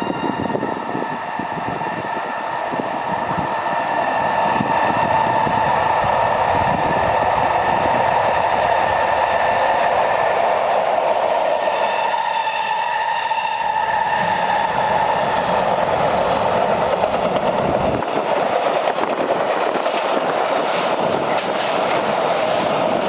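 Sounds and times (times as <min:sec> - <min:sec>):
high screech of train cars: 0:00.0 - 0:05.9, 0:11.4 - 0:15.7
train wheel clatter and rumble: 0:00.4 - 0:23.0.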